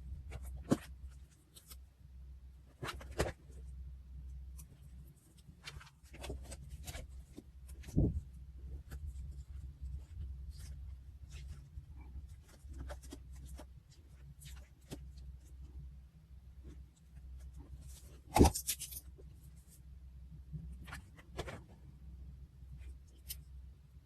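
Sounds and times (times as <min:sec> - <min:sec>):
steady low hum: 0:00.0 - 0:24.0
paper rustling and scratching: 0:02.7 - 0:03.7, 0:04.6 - 0:15.7, 0:16.6 - 0:19.8, 0:20.7 - 0:21.9.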